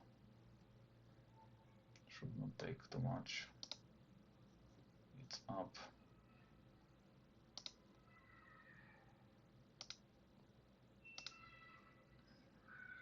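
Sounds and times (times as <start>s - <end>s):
faint computer clicks: 3.6s - 3.8s, 7.6s - 7.8s, 9.8s - 10.0s, 11.2s - 11.5s.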